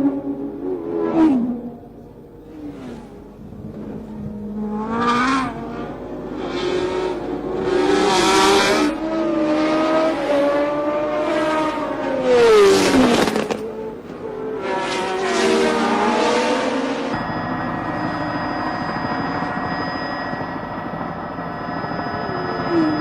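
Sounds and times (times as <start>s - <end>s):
race car engine passing close: 0.0s - 17.2s
race car engines revving past: 0.0s - 17.2s.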